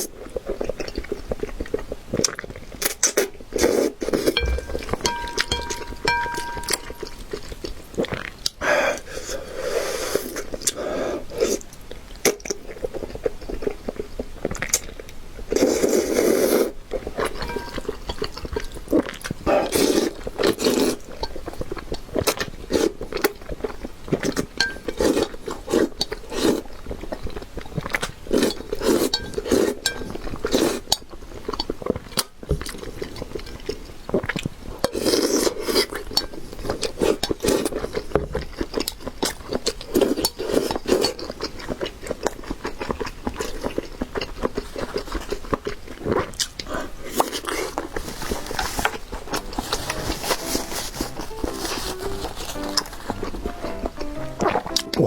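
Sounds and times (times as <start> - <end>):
wet chewing and mouth smacking: 18.3 - 55.0.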